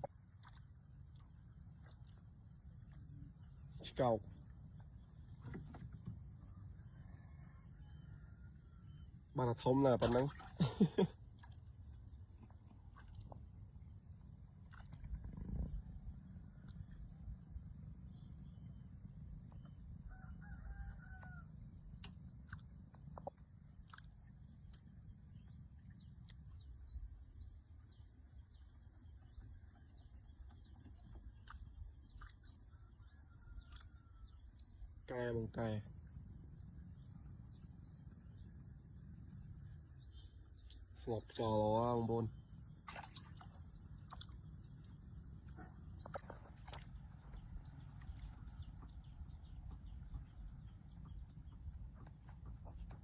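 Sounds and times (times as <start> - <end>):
small birds chirping: 0.4 - 53.0
low outdoor rumble: 10.3 - 53.0
steady low rumble: 11.8 - 20.6.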